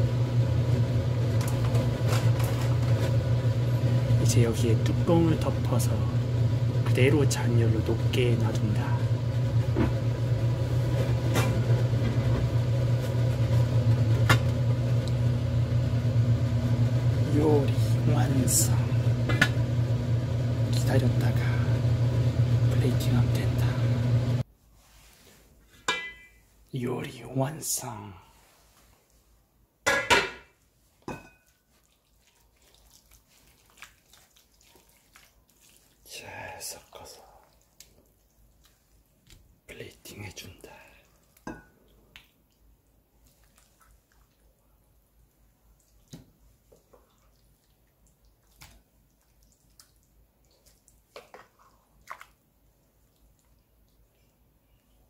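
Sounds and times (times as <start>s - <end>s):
low machine hum: 0.0s - 24.4s
metal cookware clanking: 25.9s - 26.4s, 29.9s - 30.5s.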